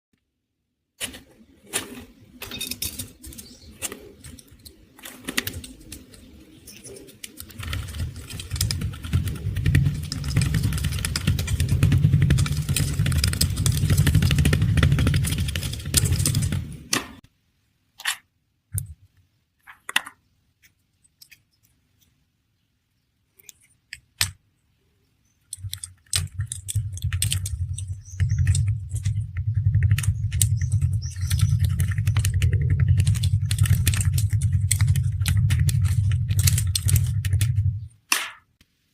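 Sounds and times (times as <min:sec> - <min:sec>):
deep rumble: 0:07.6 - 0:16.9.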